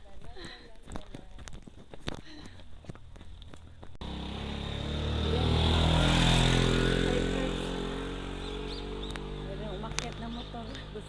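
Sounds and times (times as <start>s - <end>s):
motorcycle engine passing: 4.0s - 11.0s.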